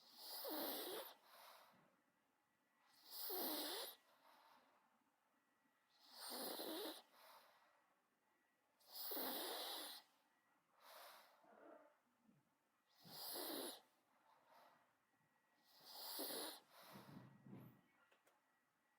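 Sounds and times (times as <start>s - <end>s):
dog snorting: 15.9s - 16.6s.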